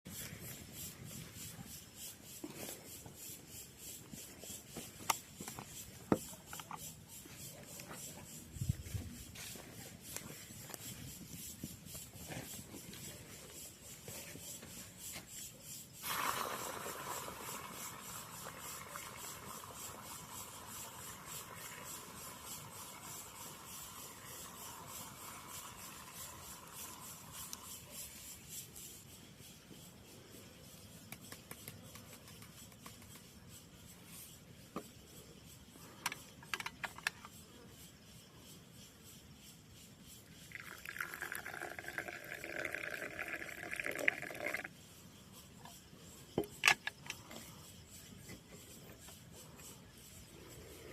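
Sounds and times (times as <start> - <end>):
liquid pouring into container: 16.0 - 27.9, 40.5 - 44.7.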